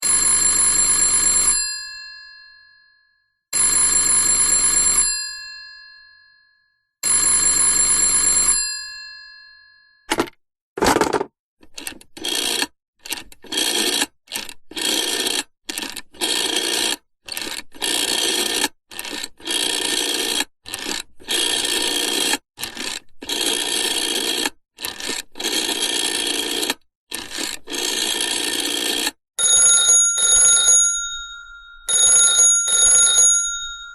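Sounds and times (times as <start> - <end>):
telephone bell ringing: 0.0 - 10.1, 29.4 - 33.9
rotary dial rasping: 11.6 - 29.2.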